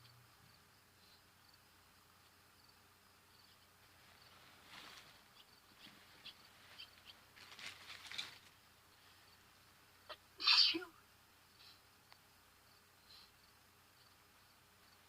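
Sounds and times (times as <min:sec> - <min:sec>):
faint high chirping: 0:00.0 - 0:11.9.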